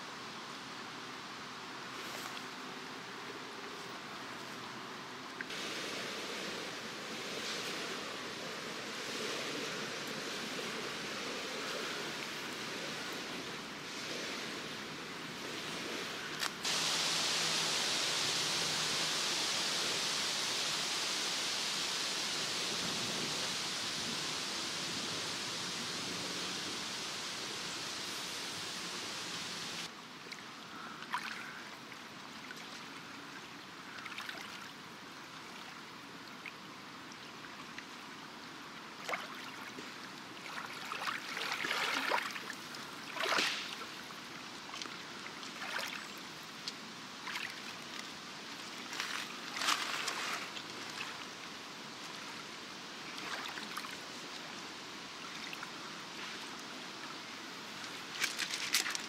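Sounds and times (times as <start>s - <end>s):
river water hissing at shore: 0.0s - 59.0s
small water splashes: 30.2s - 34.8s, 39.0s - 52.4s, 53.0s - 54.5s, 57.0s - 59.0s
water lapping: 39.0s - 46.2s, 47.2s - 48.0s.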